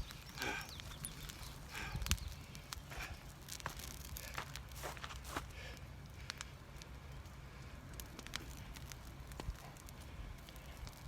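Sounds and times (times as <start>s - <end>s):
wood fire crackling: 0.0s - 11.0s.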